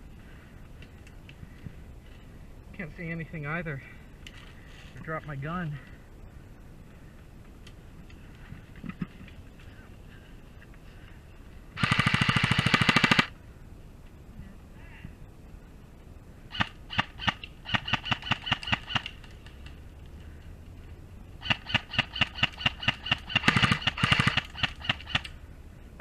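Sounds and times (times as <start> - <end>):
airsoft guns firing: 11.8 - 13.4, 16.5 - 19.2, 21.4 - 25.3.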